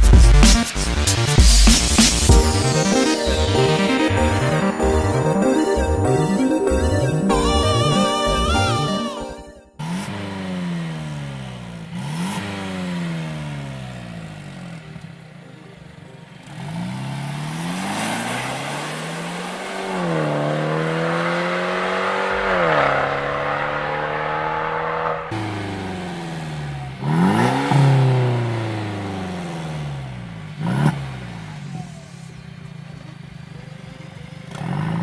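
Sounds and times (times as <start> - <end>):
car engine revving through exhaust: 9.8 - 15.2, 16.4 - 33.5, 34.5 - 35.0.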